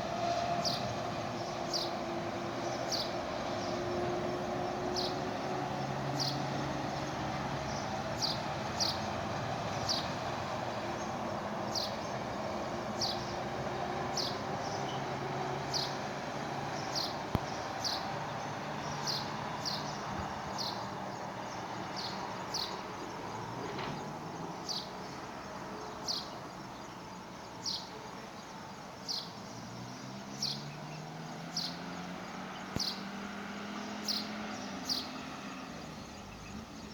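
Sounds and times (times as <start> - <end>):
outdoor background noise: 0.0 - 36.9
small bird chirping: 4.9 - 10.2, 11.0 - 12.2, 13.0 - 13.4, 14.1 - 15.1, 16.8 - 36.9.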